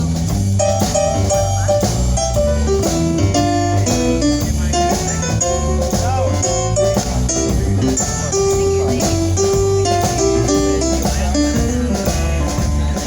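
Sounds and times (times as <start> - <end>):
band playing instrumental: 0.0 - 13.0.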